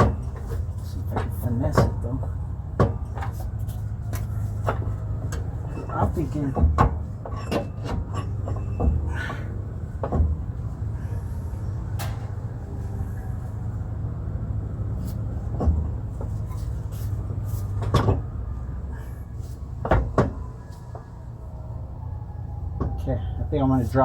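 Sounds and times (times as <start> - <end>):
metal knocks and clunks: 0.0 - 10.8, 15.3 - 16.7, 17.7 - 18.4, 19.8 - 21.2, 22.8 - 23.0
steady low hum: 0.0 - 24.0.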